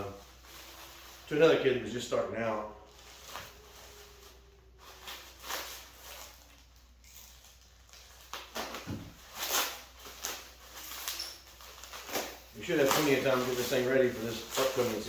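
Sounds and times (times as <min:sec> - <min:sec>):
packaging rustling: 0:02.8 - 0:15.0.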